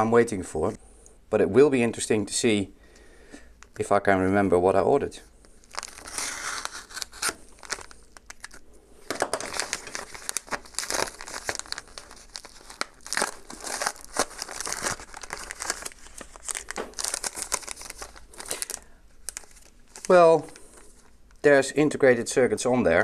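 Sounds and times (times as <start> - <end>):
packaging torn and crinkled: 5.4 - 21.4.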